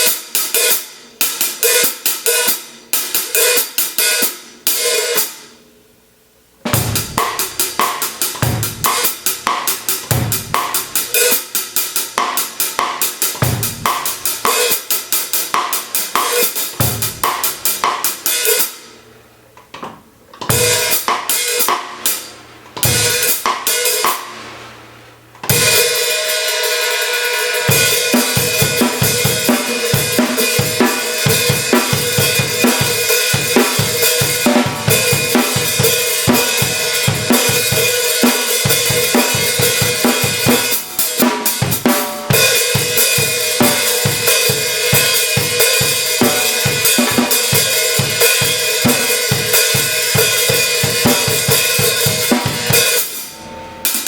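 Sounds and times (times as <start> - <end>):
hi-hats played with sticks: 0.0 - 5.6, 6.6 - 19.0, 20.5 - 54.0
snare drum: 6.7 - 11.5, 12.1 - 14.9, 15.5 - 18.6, 27.6 - 53.2
kick drum: 10.1 - 10.7.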